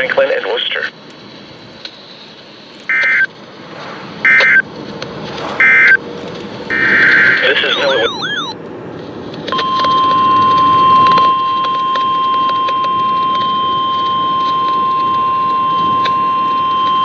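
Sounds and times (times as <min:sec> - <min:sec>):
radio hiss: 0:00.0 - 0:01.5, 0:06.7 - 0:08.5
steady high alarm beep: 0:02.9 - 0:03.3, 0:04.3 - 0:04.6, 0:05.6 - 0:06.0, 0:06.7 - 0:08.6, 0:09.6 - 0:17.0.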